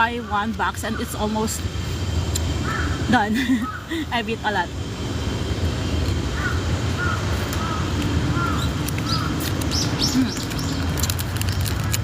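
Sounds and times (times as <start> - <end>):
low background rumble: 0.0 - 12.0
small birds chirping: 2.3 - 4.6, 5.4 - 12.0.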